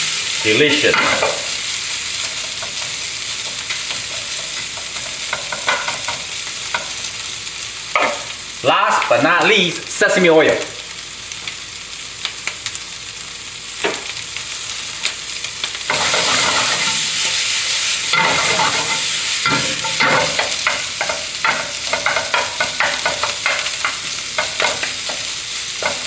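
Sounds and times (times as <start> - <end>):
stirring strokes in a pan: 0.0 - 7.3, 15.8 - 26.0
food sizzling in a frying pan: 0.0 - 26.0.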